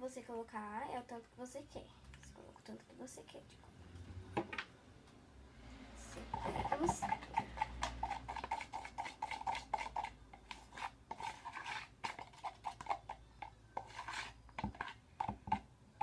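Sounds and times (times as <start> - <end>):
spoon stirring glue and paint: 6.0 - 16.0
spoon clicking and scraping container: 6.2 - 15.6.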